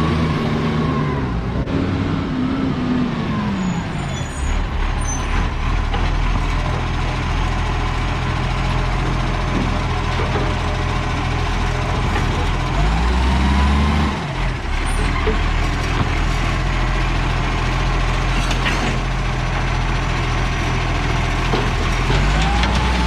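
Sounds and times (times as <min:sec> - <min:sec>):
garbage truck engine running: 0:00.0 - 0:23.0
faint high squeaks: 0:03.6 - 0:05.5.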